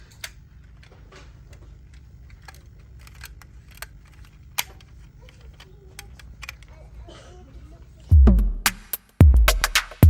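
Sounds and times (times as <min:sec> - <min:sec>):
steady low hum: 0:00.0 - 0:10.0
toy car clicking and tapping: 0:01.9 - 0:06.7.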